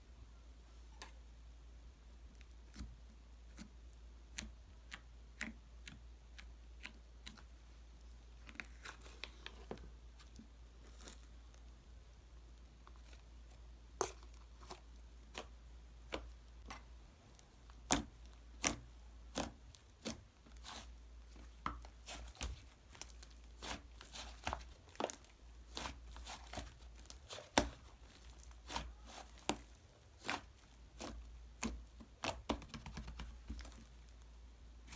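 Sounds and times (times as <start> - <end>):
slime popping and crackling: 21.6 - 34.2.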